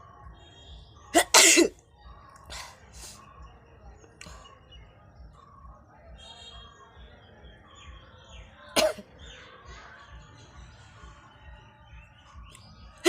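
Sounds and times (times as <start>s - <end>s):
person coughing: 1.2s - 1.7s.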